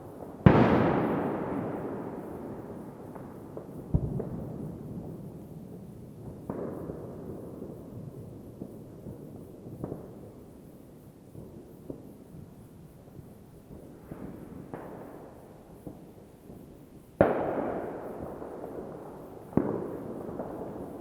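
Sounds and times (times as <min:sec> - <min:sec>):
distant firework bangs with echo: 0:00.0 - 0:05.5, 0:06.2 - 0:10.2, 0:17.2 - 0:21.0
faint firework crackling and popping: 0:00.0 - 0:21.0.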